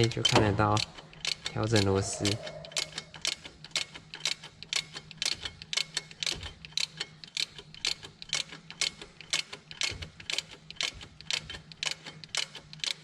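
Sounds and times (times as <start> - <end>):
ratchet wrench clicking: 0.0 - 13.0.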